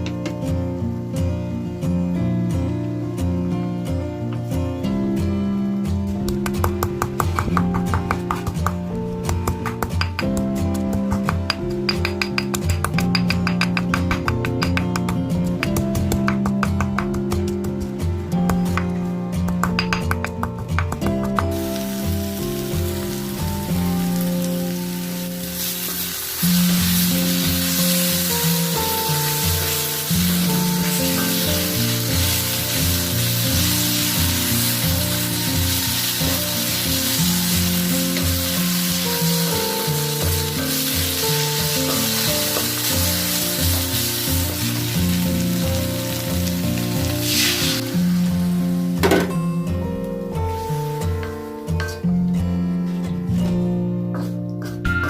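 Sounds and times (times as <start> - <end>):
background music with bass line: 0.0 - 55.0
food sizzling in hot oil: 21.3 - 49.1.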